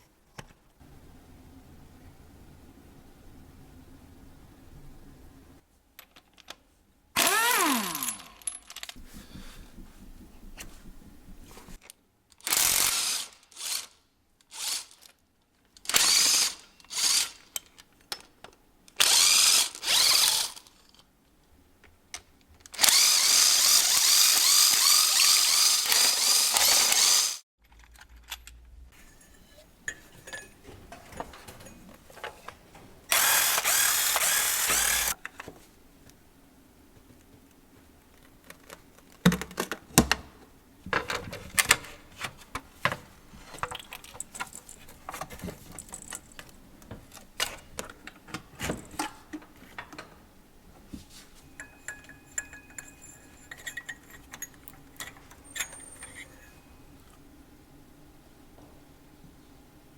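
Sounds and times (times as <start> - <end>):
ratchet wrench clicking: 22.8 - 27.4, 33.1 - 35.2.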